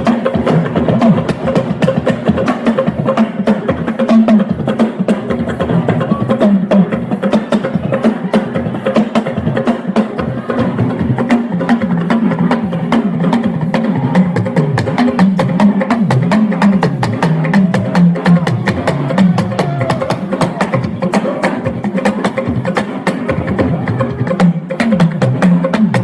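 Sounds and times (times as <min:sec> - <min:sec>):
fast percussion clicking: 0:00.0 - 0:26.0.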